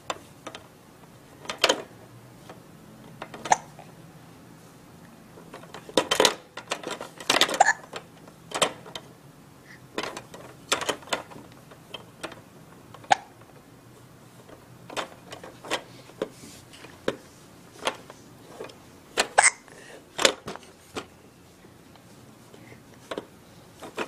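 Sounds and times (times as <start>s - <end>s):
plastic toys clicking and clattering: 0.1s - 0.7s, 1.3s - 3.8s, 5.4s - 9.1s, 9.9s - 13.7s, 14.3s - 21.1s, 22.9s - 24.0s
baby hiccuping: 19.4s - 19.7s.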